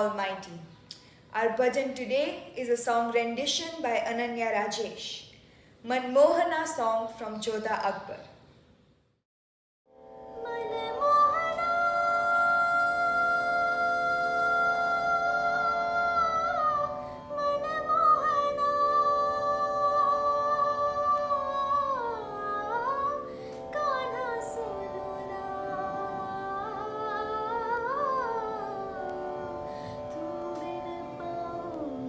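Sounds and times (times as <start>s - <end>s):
sustained accompaniment: 9.9s - 32.0s
wordless devotional song: 10.4s - 32.0s.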